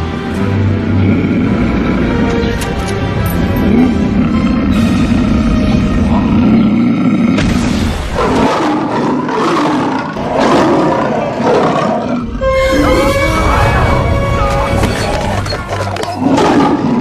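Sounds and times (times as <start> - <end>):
background music: 0.0 - 17.0
lion roaring: 3.5 - 17.0.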